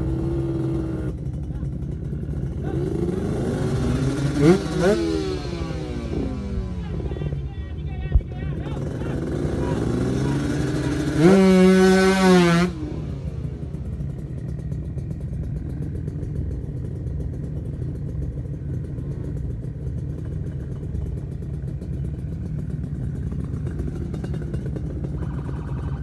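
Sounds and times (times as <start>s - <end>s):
vehicle engine rumbling: 0.0s - 26.0s
loud held tone: 25.0s - 26.0s.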